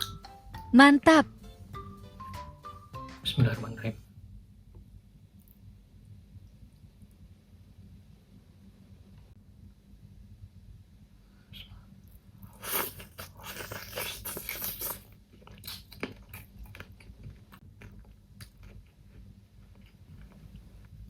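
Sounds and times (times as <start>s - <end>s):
crunchy bite: 12.5s - 17.1s
chewing clicks: 12.6s - 20.4s.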